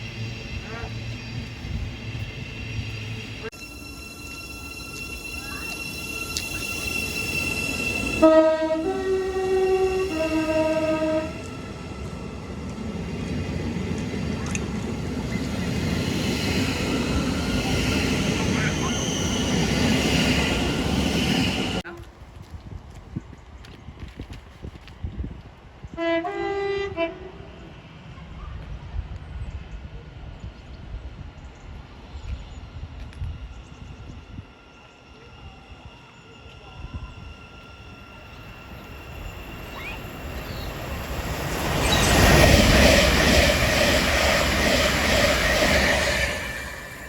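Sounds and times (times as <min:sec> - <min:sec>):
train rushing past: 0:00.0 - 0:21.9, 0:26.0 - 0:47.0
two-tone train horn blast: 0:08.0 - 0:11.5, 0:25.9 - 0:27.5.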